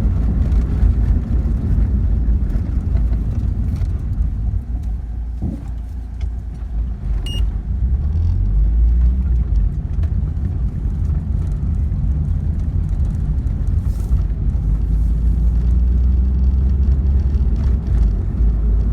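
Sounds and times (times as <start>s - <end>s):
car road rumble: 0.0s - 18.9s
high beep: 7.3s - 7.5s.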